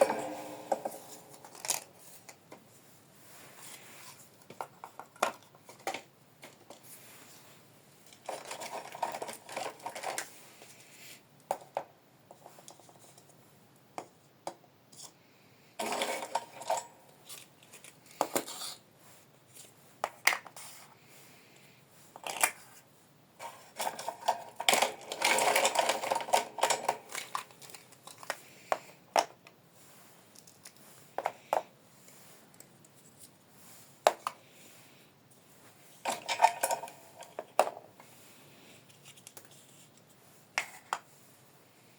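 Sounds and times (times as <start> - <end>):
plastic toy pieces clicking: 23.8 - 28.4.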